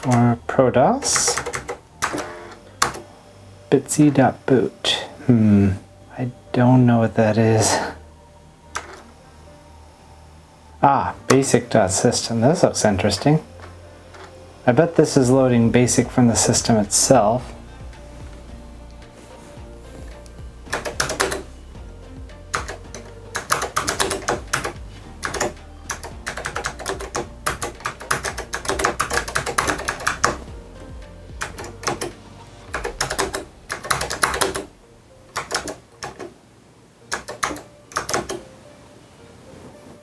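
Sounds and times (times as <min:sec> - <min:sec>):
soft background music: 0:00.0 - 0:40.0
keyboard typing: 0:01.0 - 0:03.2, 0:08.7 - 0:09.1, 0:19.2 - 0:21.6, 0:22.5 - 0:30.6, 0:31.3 - 0:36.4, 0:37.1 - 0:38.4.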